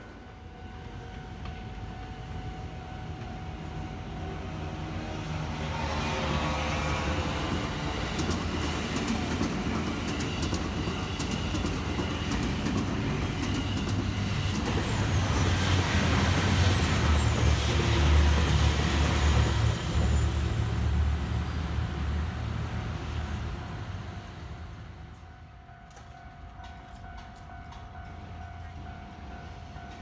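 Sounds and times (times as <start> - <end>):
train rumbling: 0.0 - 30.0
faint high squeal: 13.4 - 20.8.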